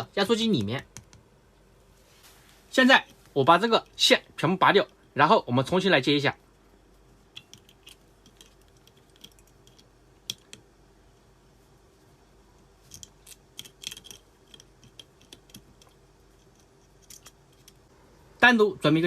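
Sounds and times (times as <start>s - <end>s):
wire connectors clicking and scraping: 6.5s - 10.8s, 12.6s - 17.9s.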